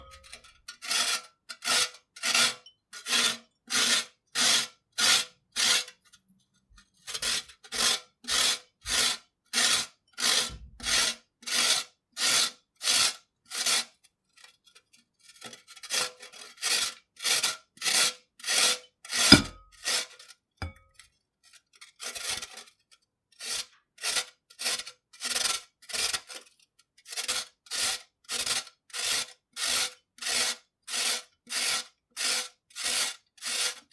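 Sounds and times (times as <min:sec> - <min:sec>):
carrot rasping on a grater: 0:00.8 - 0:06.0, 0:07.0 - 0:13.9, 0:23.4 - 0:26.4, 0:27.0 - 0:33.9
sharp knock: 0:19.3 - 0:19.6.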